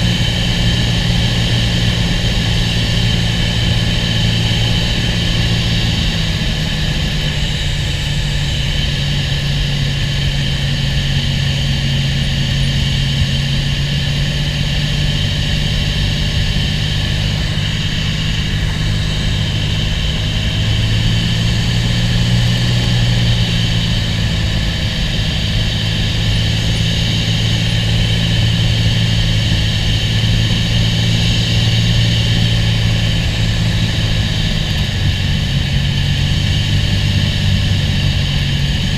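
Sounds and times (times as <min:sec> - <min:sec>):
propeller plane engine drone: 0:00.0 - 0:38.9.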